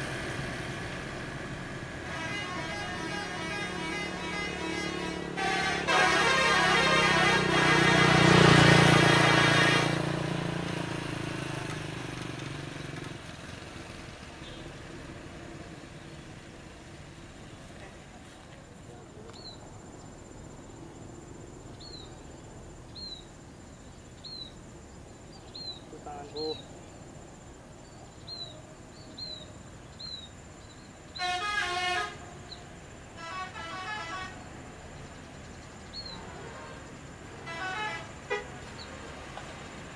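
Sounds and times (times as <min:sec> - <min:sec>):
bus engine and tyres: 0:00.0 - 0:39.9
multi-tone musical air horn: 0:02.0 - 0:10.3, 0:31.2 - 0:32.4, 0:33.2 - 0:34.5, 0:37.4 - 0:38.6.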